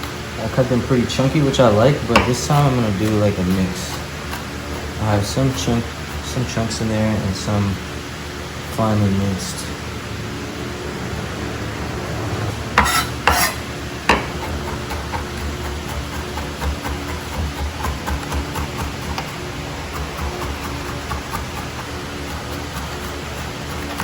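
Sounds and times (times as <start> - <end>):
utensil knocking on pan: 2.1 - 2.5, 14.1 - 14.4.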